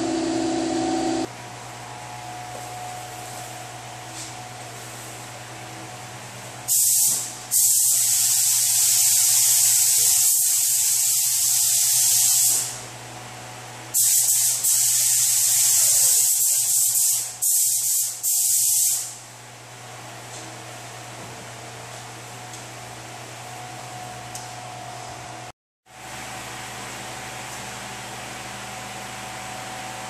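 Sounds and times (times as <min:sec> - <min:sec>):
paint spray gun air hiss: 0:06.7 - 0:12.8, 0:14.0 - 0:19.2.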